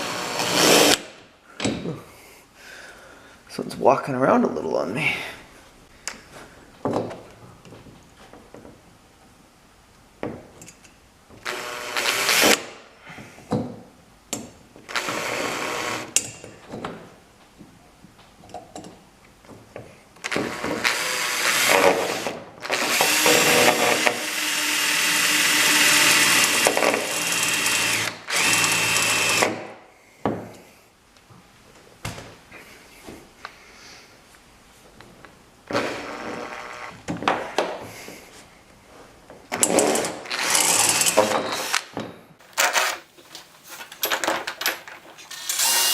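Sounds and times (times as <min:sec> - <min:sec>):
cordless drill whining: 0:20.4 - 0:29.5, 0:45.1 - 0:45.9.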